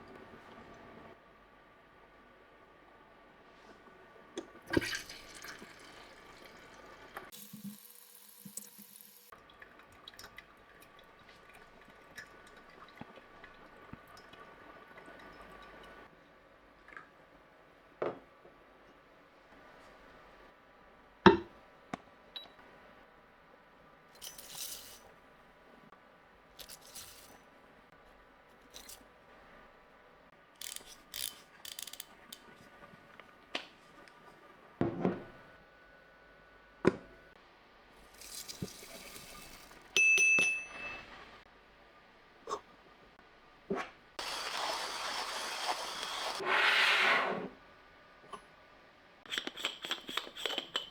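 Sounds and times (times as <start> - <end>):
kitchenware knocks and clinks: 40.0 - 41.1.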